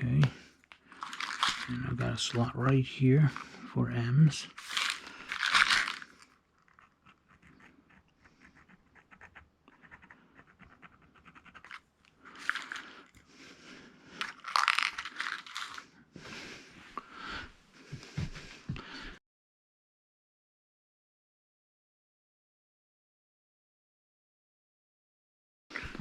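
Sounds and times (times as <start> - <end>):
paper rustling: 0.8 - 2.5, 4.4 - 7.0, 11.5 - 13.1, 14.2 - 15.8
metal parts scraping: 1.0 - 1.8, 4.6 - 6.3, 12.4 - 12.8, 14.2 - 15.8.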